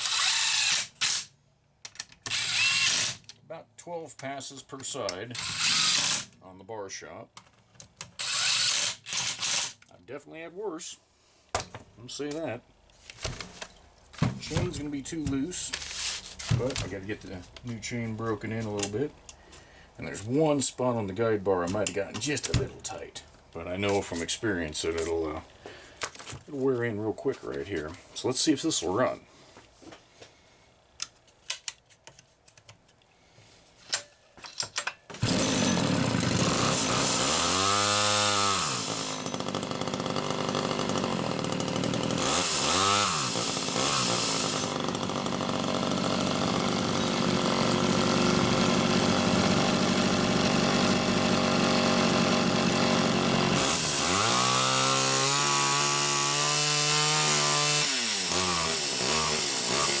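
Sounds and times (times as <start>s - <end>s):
chainsaw engine revving: 0.0s - 1.3s, 2.3s - 3.2s, 5.4s - 6.3s, 8.2s - 9.8s, 35.2s - 60.0s.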